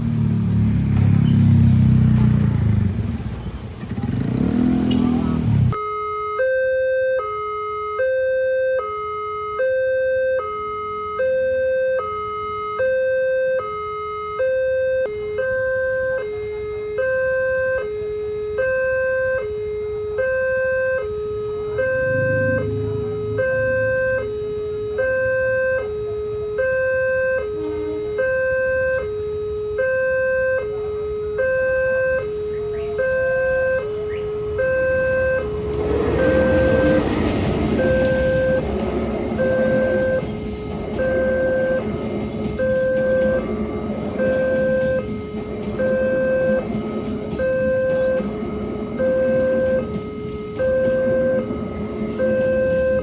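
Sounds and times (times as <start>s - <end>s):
level crossing two-tone alarm: 5.7s - 53.0s.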